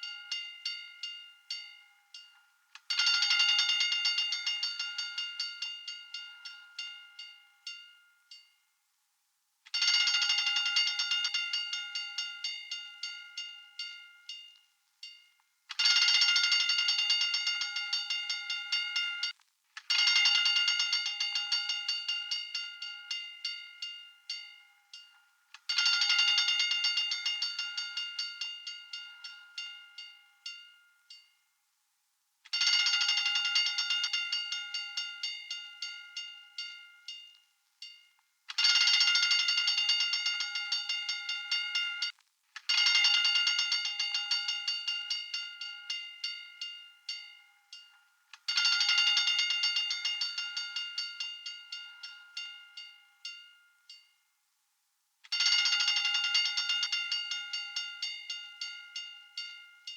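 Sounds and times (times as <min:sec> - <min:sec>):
fire alarm bell ringing: 0:00.0 - 0:08.4, 0:15.8 - 0:31.3, 0:38.6 - 0:42.1, 0:42.7 - 0:54.0, 0:55.3 - 0:59.9.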